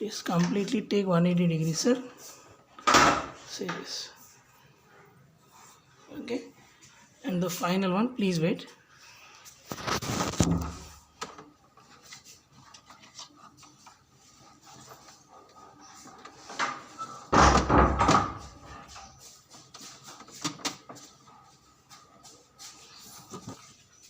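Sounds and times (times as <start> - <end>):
tv mount knocks and scrapes: 9.9 - 11.4.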